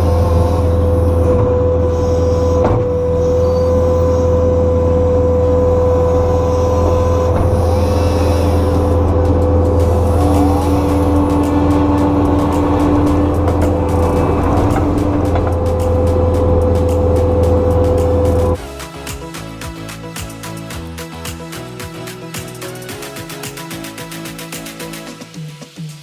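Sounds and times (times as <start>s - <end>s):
skid steer engine running: 0.0s - 18.6s
lower whine: 3.3s - 18.6s
constant whine: 4.4s - 18.6s.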